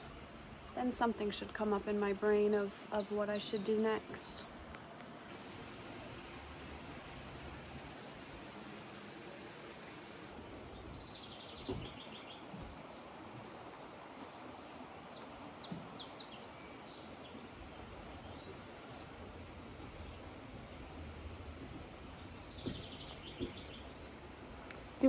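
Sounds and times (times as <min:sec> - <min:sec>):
steady background hiss: 0:00.0 - 0:25.0
birds singing and chirping: 0:22.1 - 0:25.0.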